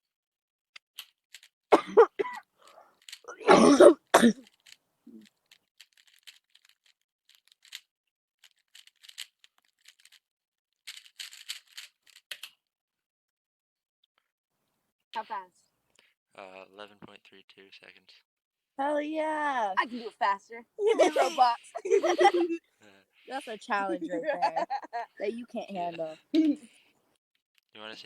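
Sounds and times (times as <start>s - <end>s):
rubik's cube clicking: 0.8s - 1.5s, 3.0s - 3.3s, 4.4s - 10.2s, 10.8s - 12.6s
person coughing: 1.8s - 2.4s, 3.3s - 4.4s, 20.9s - 22.6s.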